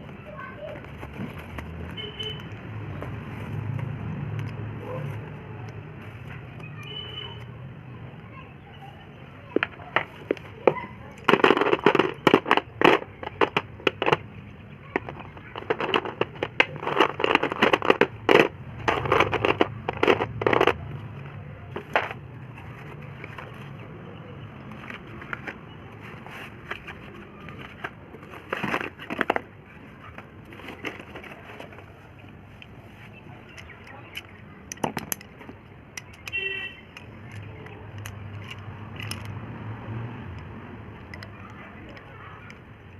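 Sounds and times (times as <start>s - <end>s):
slate pencils cracking: 9.5s - 42.9s.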